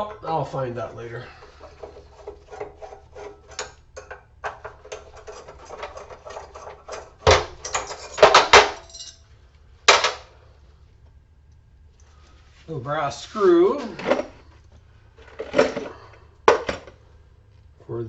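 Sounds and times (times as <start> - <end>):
hand tools and metal parts rattling: 1.3 - 10.3, 15.2 - 17.0.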